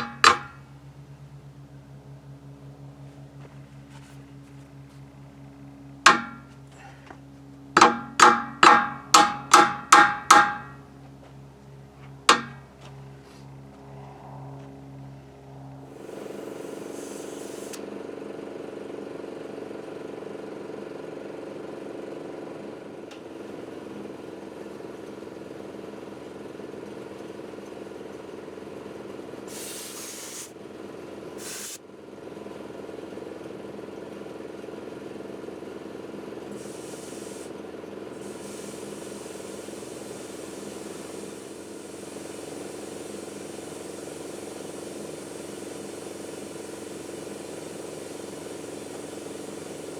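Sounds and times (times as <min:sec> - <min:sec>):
air compressor running: 0:00.0 - 0:01.2, 0:01.8 - 0:14.1, 0:15.1 - 0:49.9
air hissing bursts: 0:15.9 - 0:17.8, 0:29.5 - 0:30.5, 0:31.4 - 0:31.8, 0:36.5 - 0:37.6, 0:38.2 - 0:49.9.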